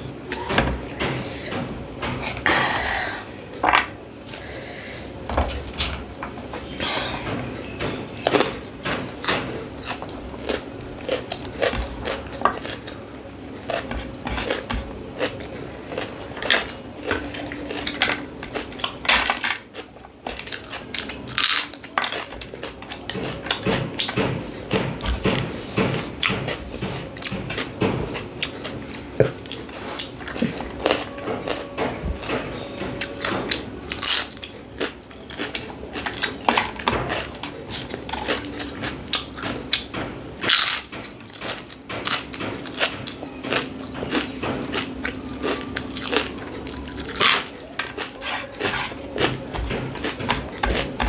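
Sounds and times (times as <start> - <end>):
crunching and chewing: 5.5 - 51.0
cutlery clinking on plate: 30.3 - 34.9.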